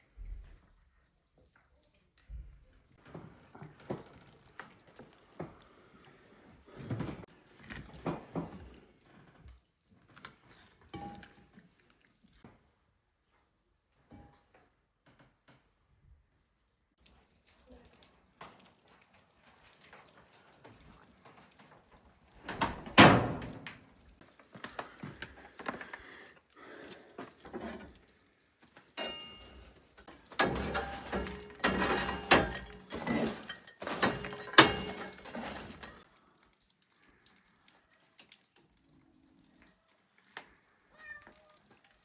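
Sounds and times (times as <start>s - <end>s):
objects knocking and rattling: 28.7s - 36.0s.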